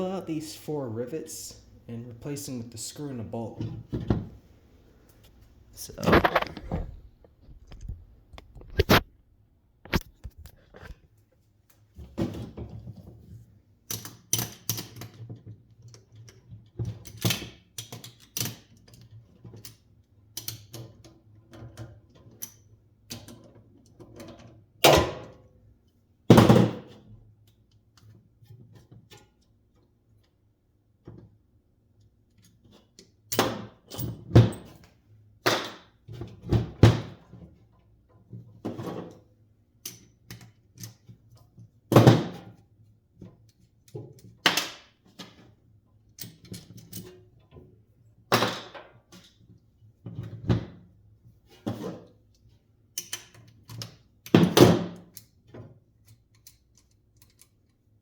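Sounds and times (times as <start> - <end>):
tools and metal parts clunking: 46.2 - 47.6.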